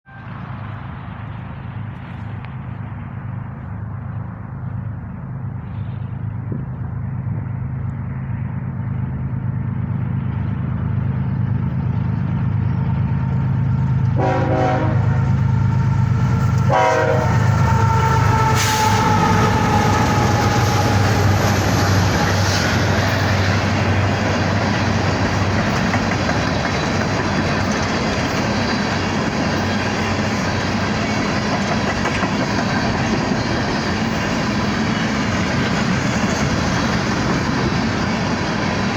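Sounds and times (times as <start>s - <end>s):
diesel locomotive engine drone: 0.0s - 38.9s
train rail and wheel noise: 0.0s - 38.9s
train horn blasts: 0.1s - 0.4s, 14.1s - 15.8s, 16.6s - 21.8s.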